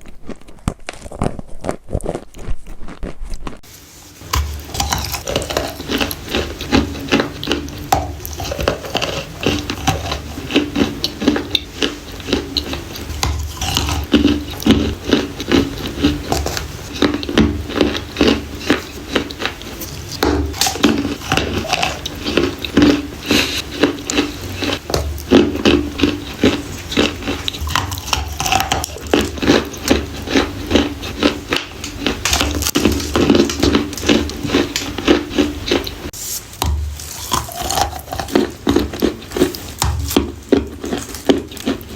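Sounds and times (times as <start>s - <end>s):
crunchy chewing and biting: 0.0s - 41.9s.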